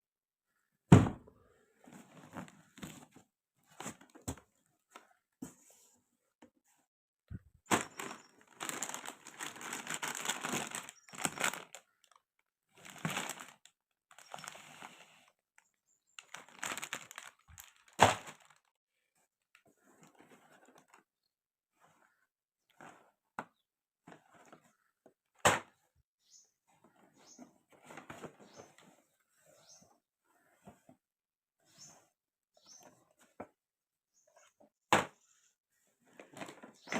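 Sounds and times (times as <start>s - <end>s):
plastic packaging rustling: 7.6s - 15.0s, 16.2s - 18.7s.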